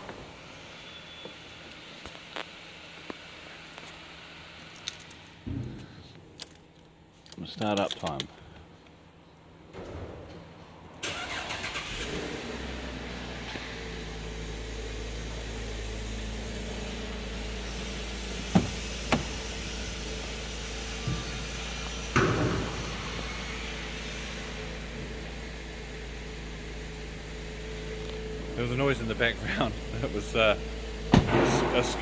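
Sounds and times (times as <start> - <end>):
car engine starting and idling: 10.7 - 32.0
distant circular saw: 12.0 - 27.2
sharp knocks: 18.5 - 19.4.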